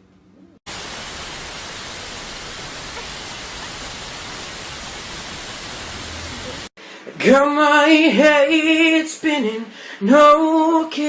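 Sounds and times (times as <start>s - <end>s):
loud static hiss: 0.7s - 6.7s.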